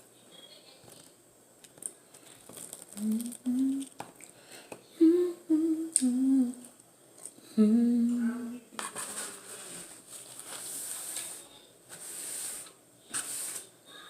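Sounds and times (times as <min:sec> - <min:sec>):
woman humming a tune: 0:03.0 - 0:03.9, 0:05.0 - 0:06.7, 0:07.5 - 0:08.7.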